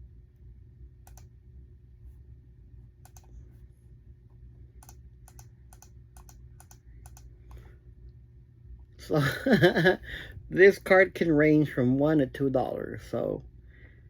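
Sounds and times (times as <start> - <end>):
steady low hum: 0.0 - 14.0
keyboard keys clicking: 3.0 - 3.3, 4.8 - 7.3.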